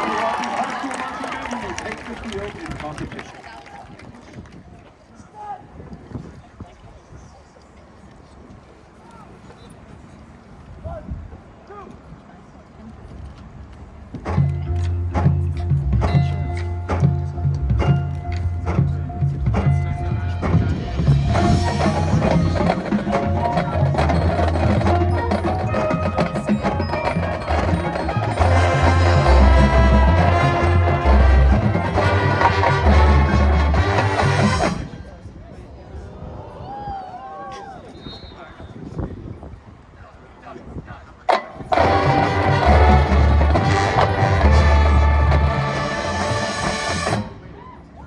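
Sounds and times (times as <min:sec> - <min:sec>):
deep low drums: 0:14.2 - 0:34.9, 0:41.7 - 0:47.4
marching band playing: 0:14.2 - 0:35.0, 0:41.7 - 0:47.6.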